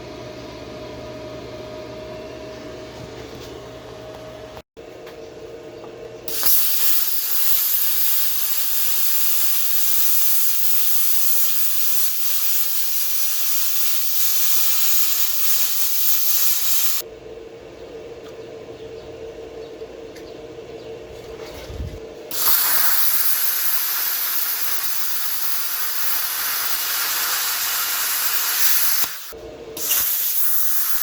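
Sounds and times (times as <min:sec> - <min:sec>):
plasma cutter hissing: 0:06.3 - 0:17.0, 0:22.3 - 0:31.0.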